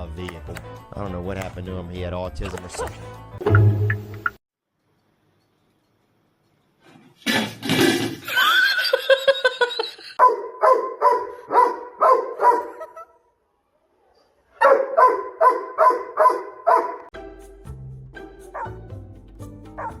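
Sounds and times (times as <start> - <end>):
dog barking: 10.2 - 12.9, 14.6 - 17.1, 18.6 - 18.8, 19.8 - 20.0
dog yipping: 14.6 - 17.1.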